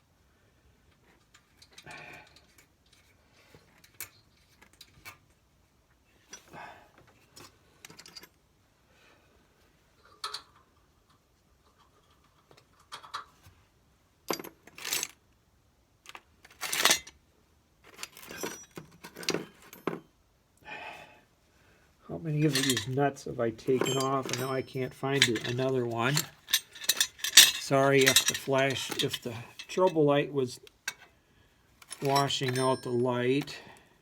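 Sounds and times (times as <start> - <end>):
metal nuts clinking and rattling: 10.0 - 13.4, 16.1 - 17.2, 17.9 - 20.0, 22.4 - 23.0, 23.6 - 30.0, 31.8 - 33.6.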